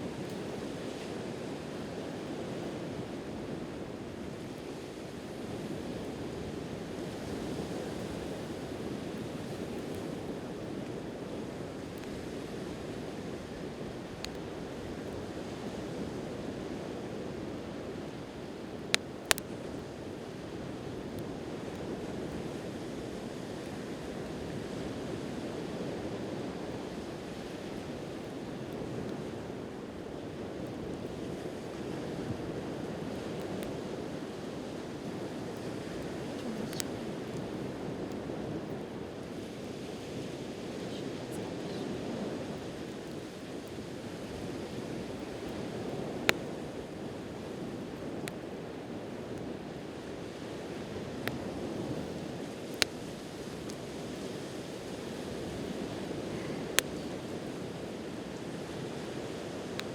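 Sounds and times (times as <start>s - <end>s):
sea waves on the shore: 0.0s - 59.9s
campfire wood popping: 7.0s - 15.9s, 18.1s - 24.6s, 26.4s - 40.0s, 42.5s - 59.9s.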